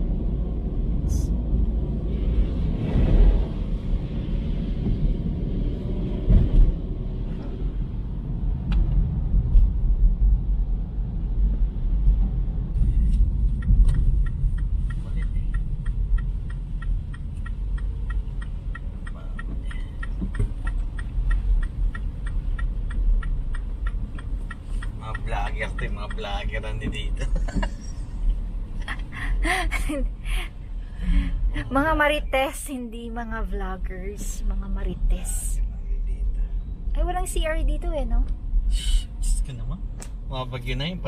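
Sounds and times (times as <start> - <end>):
car road and engine rumble: 0.0 - 41.0
quick regular ticking: 13.5 - 26.6.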